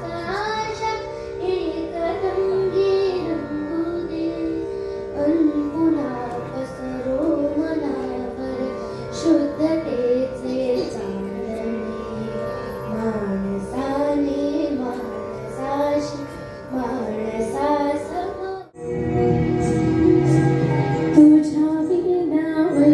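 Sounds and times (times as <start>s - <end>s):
sustained instrumental tones: 16.2s - 22.9s.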